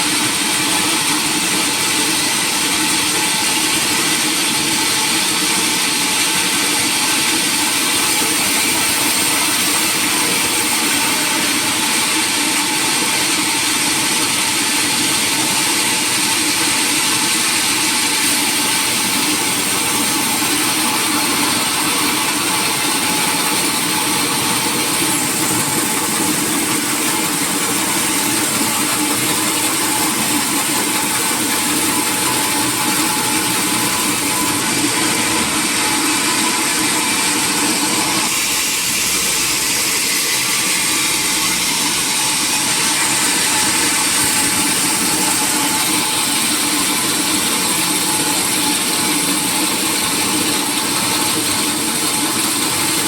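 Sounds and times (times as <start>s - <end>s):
sawmill machinery drone: 0.0s - 53.0s
high mechanical whine: 17.4s - 52.8s.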